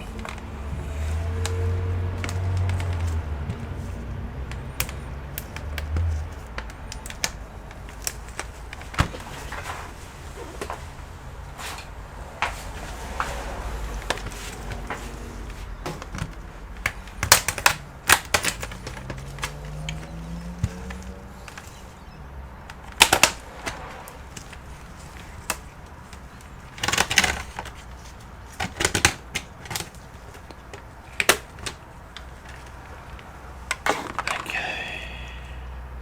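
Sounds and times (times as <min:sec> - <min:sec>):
clicks and taps on plastic case: 0:00.1 - 0:09.6, 0:14.0 - 0:34.4.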